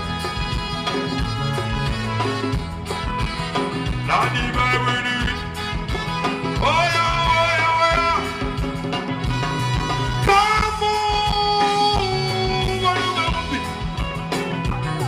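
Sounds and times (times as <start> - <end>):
band music bass line: 0.0 - 15.0
person singing: 4.1 - 5.5.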